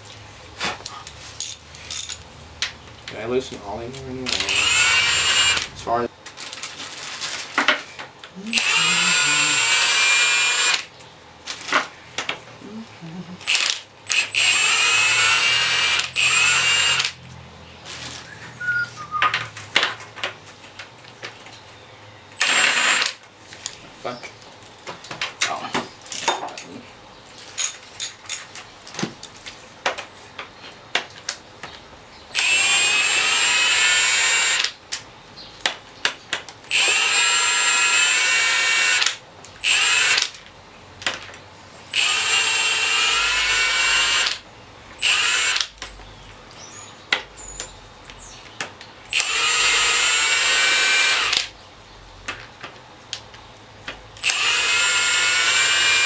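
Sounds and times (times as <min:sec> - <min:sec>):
metallic clicks of hand tools: 0:01.4 - 0:03.2
cordless power tool whining: 0:03.2 - 0:06.1, 0:08.5 - 0:10.9, 0:13.4 - 0:17.2, 0:22.4 - 0:23.2, 0:32.3 - 0:34.7, 0:36.7 - 0:40.3, 0:41.9 - 0:44.4, 0:45.0 - 0:45.7, 0:49.1 - 0:51.5, 0:54.2 - 0:56.0.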